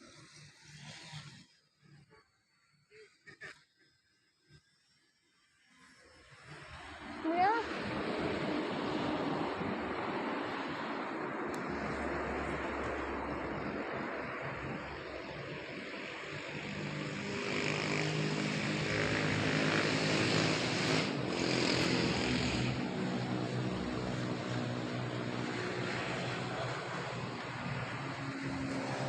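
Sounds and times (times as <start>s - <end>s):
model airplane motor humming: 14.8s - 24.5s.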